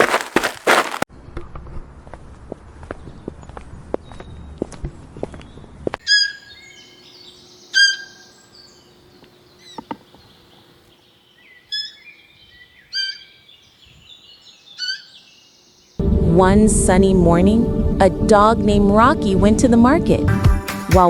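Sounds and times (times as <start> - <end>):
birds chirping: 3.0 - 16.0.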